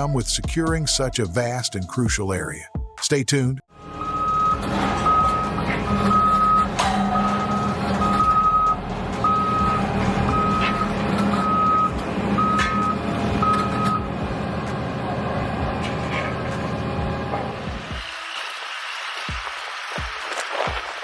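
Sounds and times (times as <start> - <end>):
diesel engine running: 3.7 - 18.3
truck reversing alarm beeping: 3.8 - 15.7.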